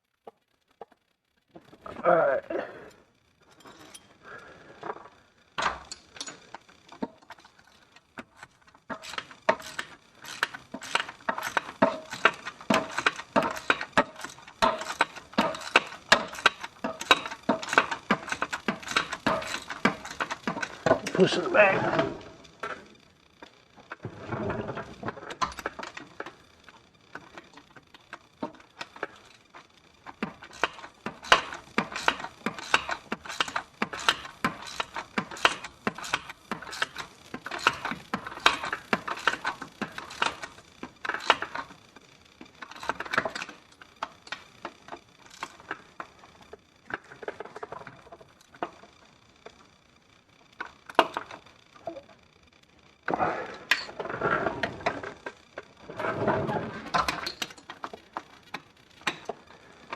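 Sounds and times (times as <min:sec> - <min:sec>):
metal tool clicks and clinks: 0:05.6 - 0:08.0.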